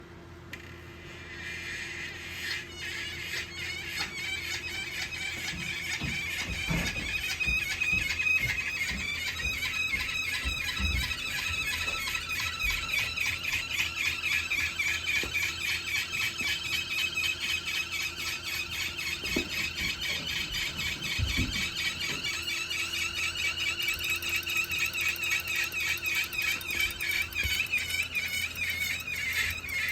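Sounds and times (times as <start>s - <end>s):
bike trainer squealing: 0.6s - 29.9s.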